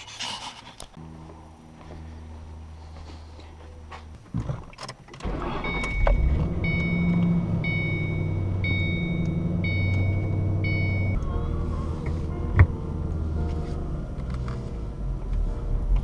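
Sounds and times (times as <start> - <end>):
car engine starting and idling: 1.0 - 16.0
dashboard warning chime beeps: 5.5 - 11.2.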